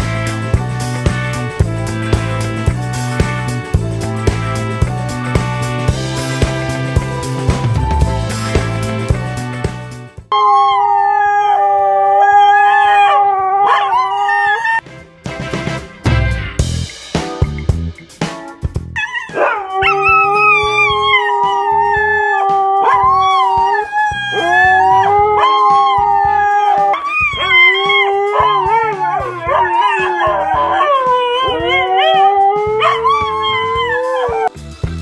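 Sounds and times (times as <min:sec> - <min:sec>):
small dogs howling: 0:10.3 - 0:14.8, 0:19.0 - 0:34.5.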